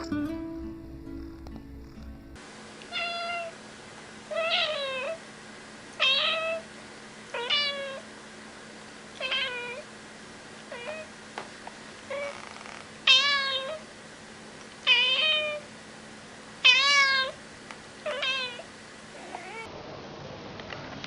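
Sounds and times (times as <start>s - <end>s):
cat meowing: 2.9s - 3.6s, 4.3s - 5.2s, 6.0s - 6.6s, 7.4s - 8.0s, 9.2s - 9.8s, 10.7s - 11.1s, 12.1s - 13.8s, 14.9s - 15.6s, 16.7s - 17.4s, 18.1s - 19.7s.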